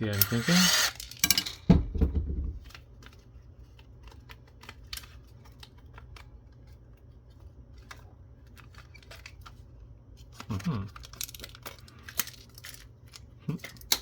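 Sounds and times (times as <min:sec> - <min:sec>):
handling knock and rustle: 0:01.3 - 0:03.0.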